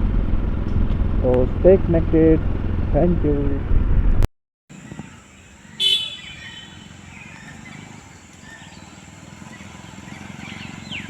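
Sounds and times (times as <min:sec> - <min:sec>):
low outdoor background: 0:00.0 - 0:11.0
faint bird chirps: 0:04.8 - 0:11.0
loud high-pitched call: 0:05.7 - 0:07.8.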